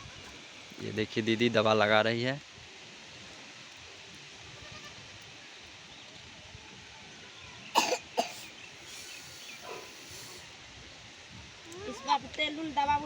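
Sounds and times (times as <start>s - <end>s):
faint steady hiss: 0.0s - 13.0s
person coughing: 7.8s - 8.5s.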